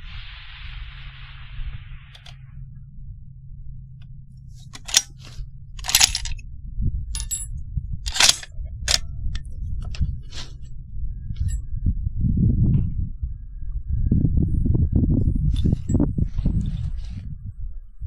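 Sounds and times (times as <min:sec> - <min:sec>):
wind on microphone: 0:00.0 - 0:03.6, 0:04.4 - 0:18.0
sharp metallic clinks: 0:04.7 - 0:06.4, 0:07.2 - 0:07.5, 0:08.1 - 0:09.0.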